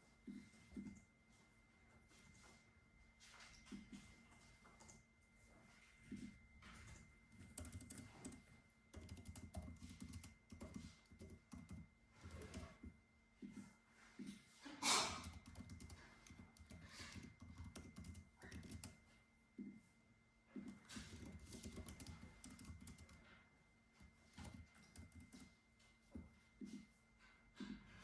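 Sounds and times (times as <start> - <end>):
keyboard typing: 6.8 - 13.0, 15.0 - 19.0, 20.6 - 23.3, 24.0 - 25.5.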